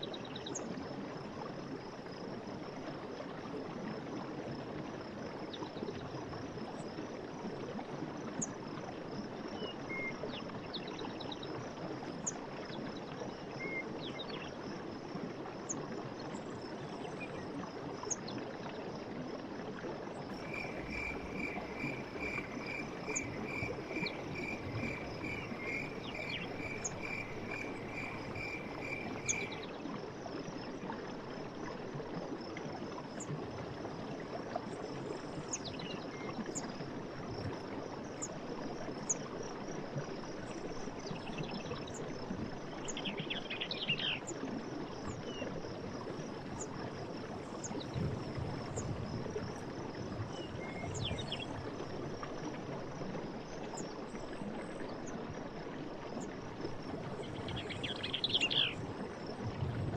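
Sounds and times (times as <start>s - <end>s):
insects chirring: 20.3s - 29.7s, 57.1s - 59.9s.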